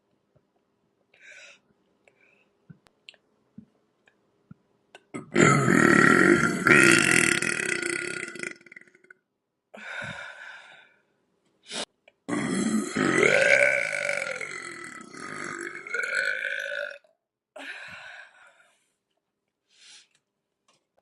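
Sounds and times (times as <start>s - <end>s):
woman burping: 5.1s - 9.1s, 12.3s - 17.1s.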